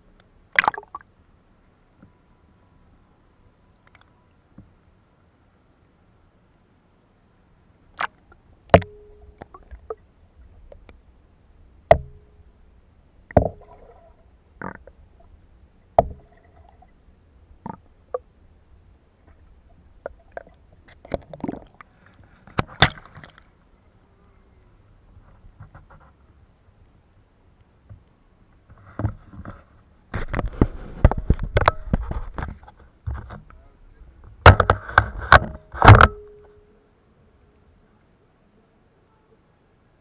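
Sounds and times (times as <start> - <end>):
faint water sounds: 0.0 - 40.0.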